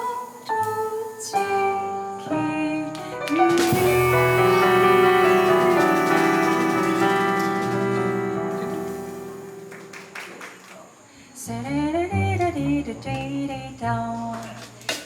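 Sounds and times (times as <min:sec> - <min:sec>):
jazz band chord led by piano: 0:00.8 - 0:10.3
gliding melodic line: 0:03.2 - 0:09.7.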